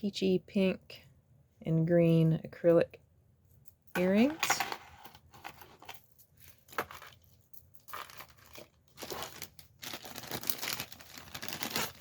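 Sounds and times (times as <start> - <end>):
plastic bag crinkling: 5.4 - 12.0.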